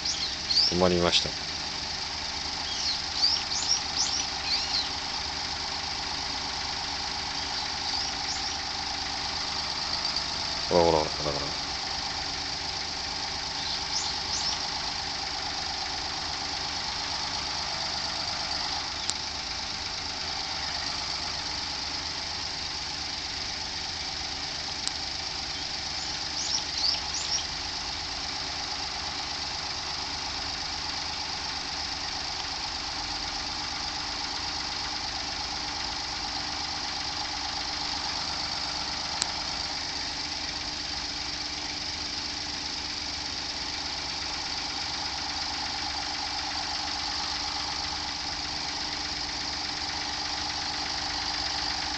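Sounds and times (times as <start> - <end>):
short bird chirps: 0.0 - 0.8, 2.6 - 5.0, 7.4 - 8.7, 13.5 - 14.7, 25.5 - 27.5
car engine rattling: 0.0 - 51.9.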